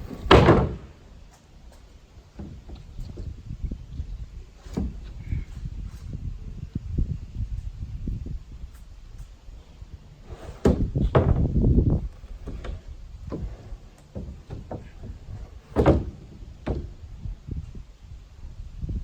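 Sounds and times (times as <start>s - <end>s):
heavy thuds and knocks: 0.0s - 1.1s, 10.2s - 17.8s.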